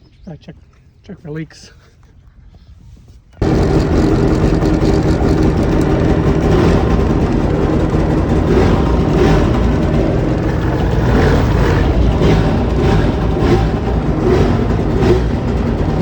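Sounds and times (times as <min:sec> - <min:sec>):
jet ski engine revving: 0:03.4 - 0:16.0.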